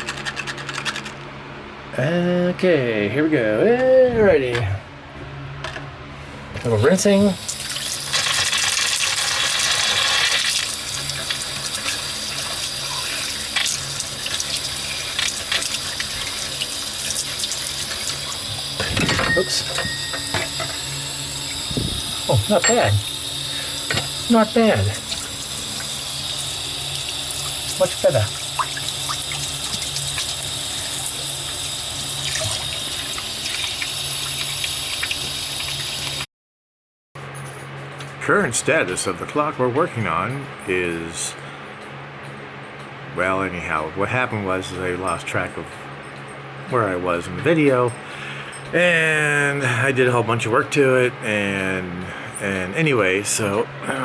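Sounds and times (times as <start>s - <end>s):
tap water running into sink: 7.4s - 19.1s, 19.7s - 36.2s.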